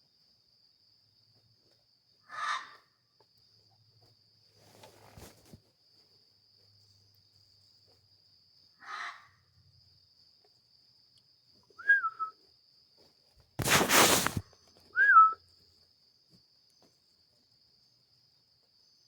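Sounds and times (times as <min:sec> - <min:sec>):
whistled animal notes: 0:11.8 - 0:12.4, 0:15.0 - 0:15.4.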